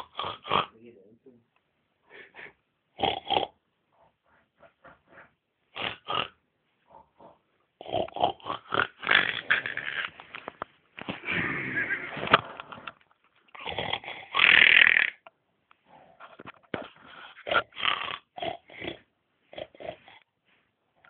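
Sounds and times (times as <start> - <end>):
person snoring loudly: 3.0 - 3.6, 5.8 - 6.4, 7.8 - 10.1, 11.2 - 12.3, 13.6 - 15.2.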